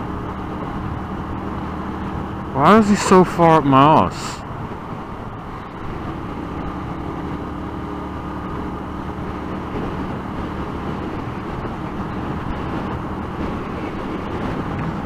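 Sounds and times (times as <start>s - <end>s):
motorcycle engine cruising: 0.0s - 15.0s
wind rushing over microphone: 4.4s - 15.0s.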